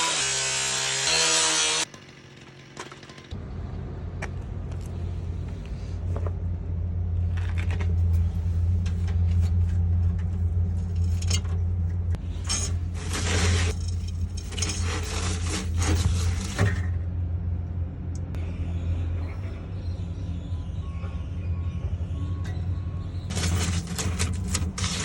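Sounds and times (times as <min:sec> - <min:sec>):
metal clinking and scraping: 0:07.2 - 0:17.0, 0:23.3 - 0:25.0.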